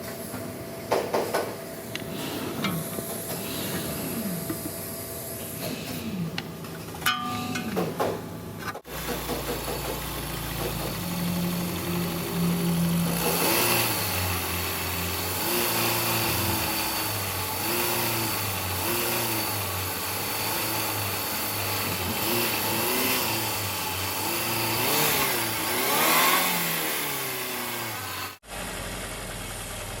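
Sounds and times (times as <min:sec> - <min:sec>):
vehicle engine revving: 0:10.1 - 0:28.4.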